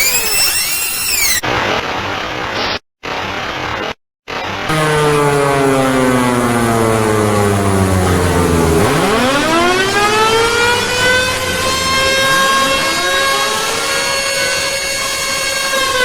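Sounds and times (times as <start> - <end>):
air-raid siren wailing: 4.7 - 16.0.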